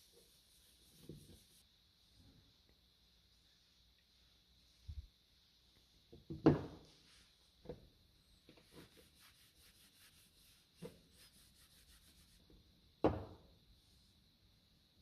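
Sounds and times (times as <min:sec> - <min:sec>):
rubbing strokes on wood: 0:00.0 - 0:01.6, 0:08.6 - 0:12.5.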